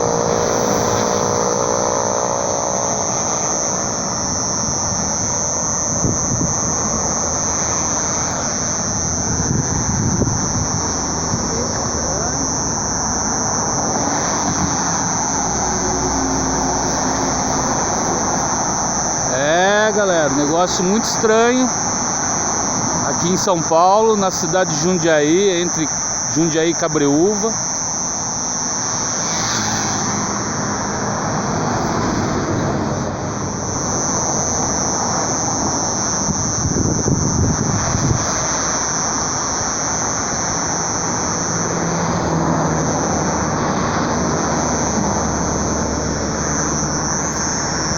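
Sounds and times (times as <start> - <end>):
high-pitched buzz drone: 0.0 - 47.9
low noise rush: 0.0 - 47.9
low vehicle noise: 0.0 - 47.9.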